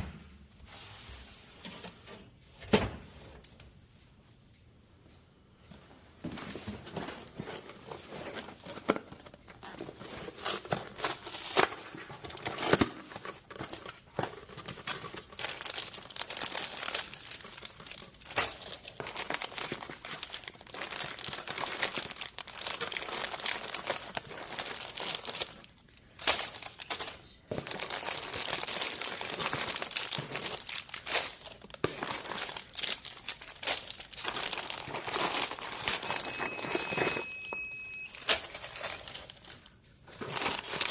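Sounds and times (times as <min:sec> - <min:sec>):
chip bags crinkling: 0:09.1 - 0:37.2, 0:38.2 - 0:40.9.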